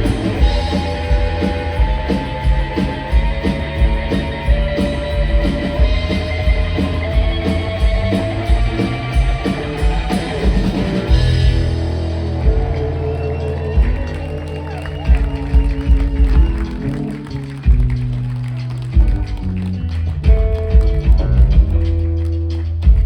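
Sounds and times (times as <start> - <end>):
electric guitar lead notes: 0.0 - 18.4
drum beat: 0.0 - 22.2
bass guitar: 0.0 - 23.0.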